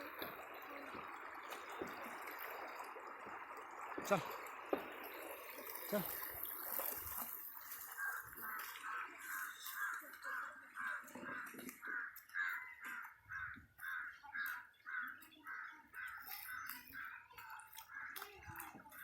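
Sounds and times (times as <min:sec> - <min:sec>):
animal call: 0:05.7 - 0:18.3.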